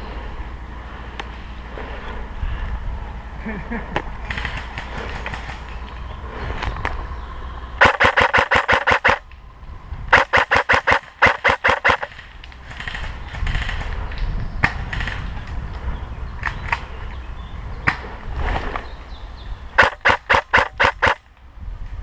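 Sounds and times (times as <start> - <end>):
airsoft rifle full-auto bursts: 7.8 - 9.2, 10.1 - 12.2, 19.8 - 21.2.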